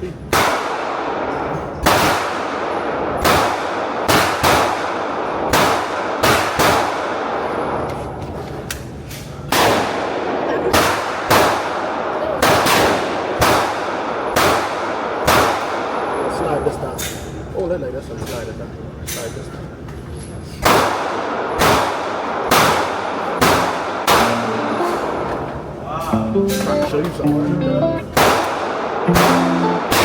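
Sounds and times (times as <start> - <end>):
handgun shots with echo: 20.7 - 25.2.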